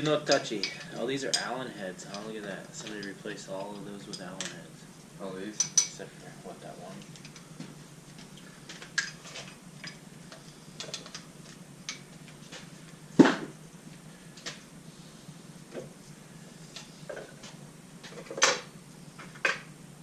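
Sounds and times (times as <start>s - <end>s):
metal tools and bolts clinking: 0.0s - 4.6s, 5.5s - 6.0s.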